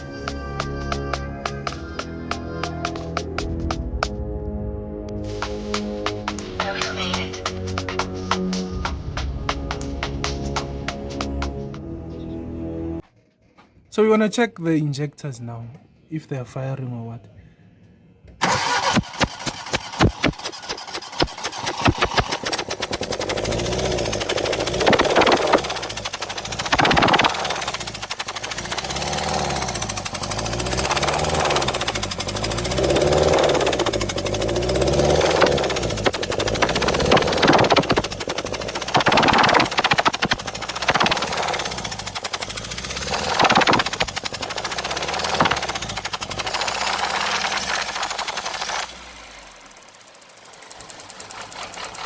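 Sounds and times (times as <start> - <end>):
engine turning over unevenly: 18.4 - 52.0
hissing bursts: 18.4 - 52.0.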